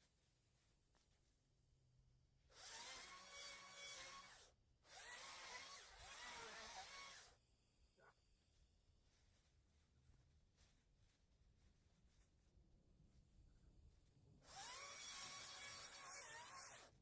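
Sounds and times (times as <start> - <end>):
electric chainsaw cutting: 2.6 - 7.4, 14.5 - 17.0.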